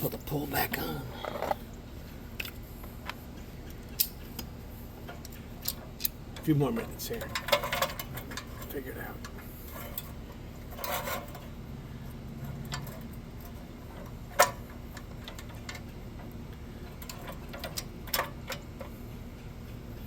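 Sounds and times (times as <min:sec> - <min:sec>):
low steady hum: 0:00.0 - 0:20.0
metal tools clicking and clinking: 0:05.1 - 0:11.5.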